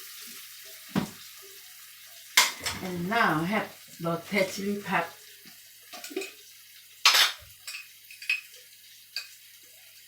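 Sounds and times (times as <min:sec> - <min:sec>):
utensils clinking on cookware: 0:02.4 - 0:03.7, 0:05.9 - 0:06.4, 0:07.0 - 0:08.6.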